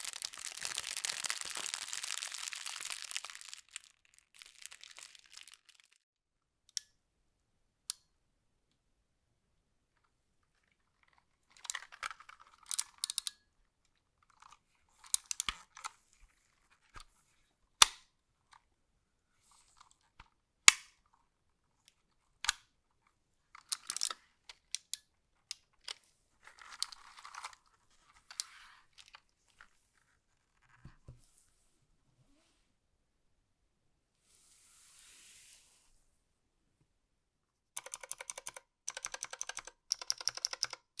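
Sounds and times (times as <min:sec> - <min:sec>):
packaging crinkling: 0:00.0 - 0:06.0.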